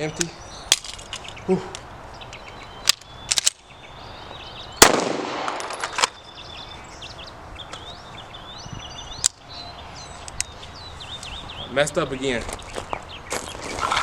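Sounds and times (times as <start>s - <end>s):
birds chirping: 0.0s - 14.0s
gunshot with ringing echo: 4.8s - 6.0s
sharp crack: 4.8s - 6.2s.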